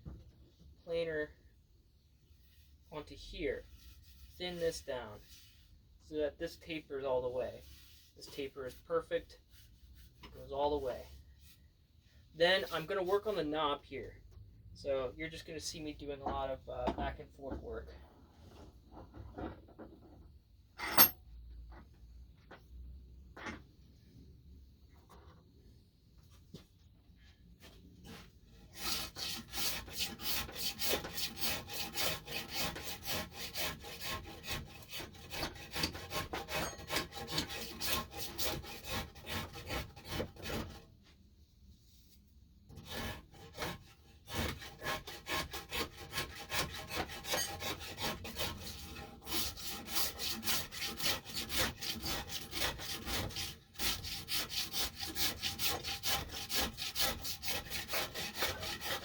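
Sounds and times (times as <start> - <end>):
hand tool rasping wood: 28.1 - 40.8, 42.7 - 59.0.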